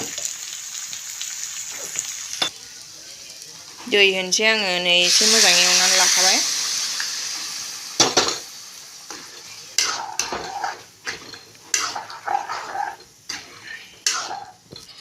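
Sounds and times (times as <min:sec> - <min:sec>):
spoon scraping a pot: 0:09.8 - 0:15.0.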